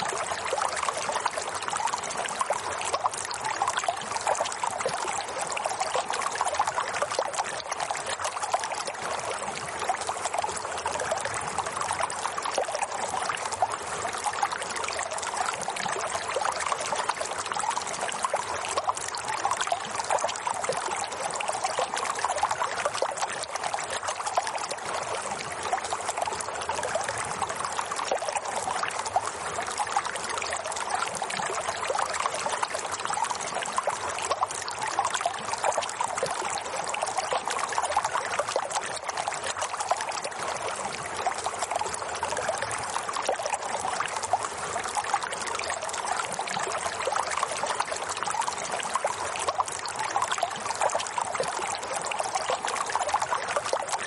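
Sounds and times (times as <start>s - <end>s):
water trickling and splashing: 0.0s - 54.0s.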